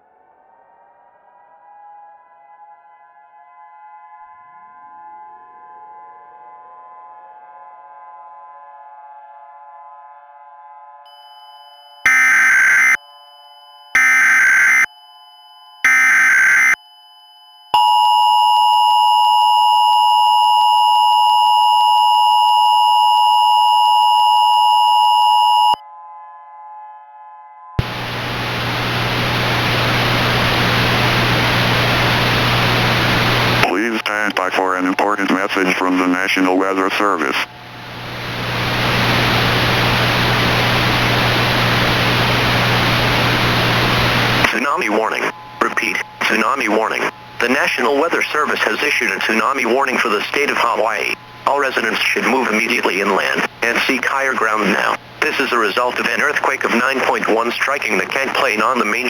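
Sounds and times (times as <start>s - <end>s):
two-tone attention signal: 11.1s - 25.8s
digital data burst: 14.0s - 14.9s, 15.8s - 16.8s
low steady hum: 27.8s - 36.1s, 36.8s - 58.6s
loud static hiss: 27.8s - 59.0s.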